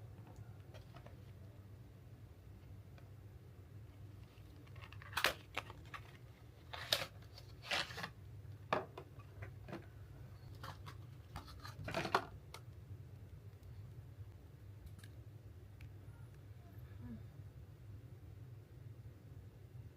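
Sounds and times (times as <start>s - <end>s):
low steady hum: 0.0s - 19.9s
paper or plastic rustling: 4.2s - 8.2s.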